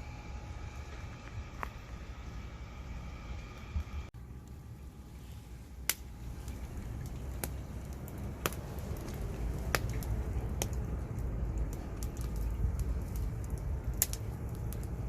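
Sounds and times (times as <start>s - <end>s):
low steady rumble: 0.0s - 15.0s
campfire crackling pops: 5.7s - 15.0s.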